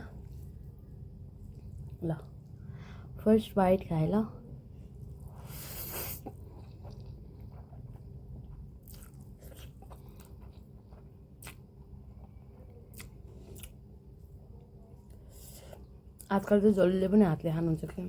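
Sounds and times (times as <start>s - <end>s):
person chewing noodles: 5.0s - 13.8s.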